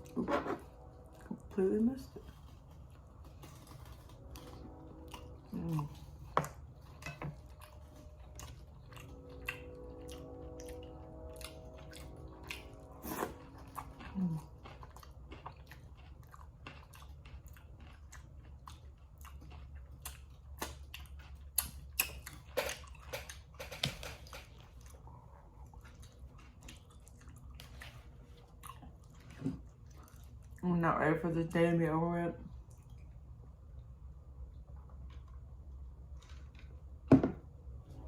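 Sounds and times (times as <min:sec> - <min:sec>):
steady hum: 0:00.0 - 0:16.6
close chewing and mouth clicks: 0:02.2 - 0:30.7, 0:32.5 - 0:33.4.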